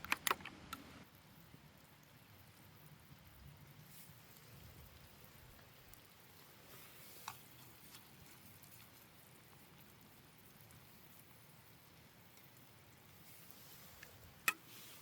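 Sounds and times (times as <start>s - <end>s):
campfire crackling: 0.0s - 15.0s
low steady hiss: 0.0s - 15.0s.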